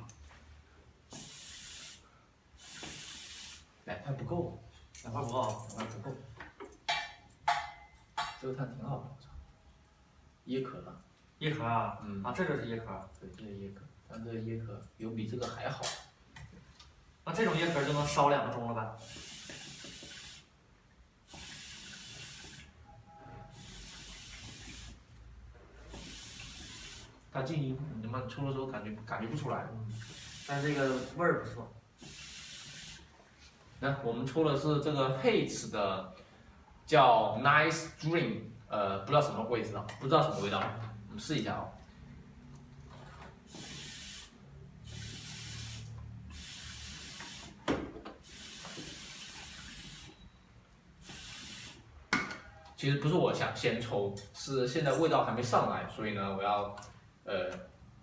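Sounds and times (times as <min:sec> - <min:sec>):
air drawn through hookah hose: 0:01.1 - 0:03.7, 0:19.0 - 0:20.5, 0:21.3 - 0:22.7, 0:23.4 - 0:25.0, 0:25.8 - 0:27.2, 0:29.9 - 0:31.2, 0:32.0 - 0:33.1, 0:43.5 - 0:47.6, 0:48.2 - 0:50.1, 0:51.0 - 0:51.8.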